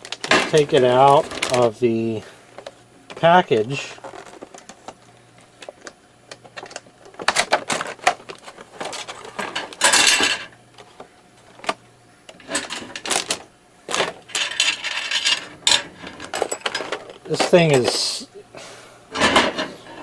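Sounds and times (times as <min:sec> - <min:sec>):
packaging rustling: 0:00.0 - 0:10.0, 0:12.6 - 0:14.9.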